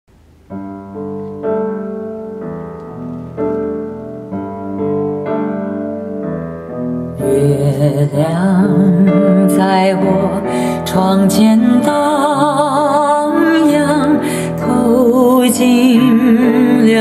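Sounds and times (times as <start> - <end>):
piano chords: 0.1 - 17.0
person singing: 7.2 - 17.0.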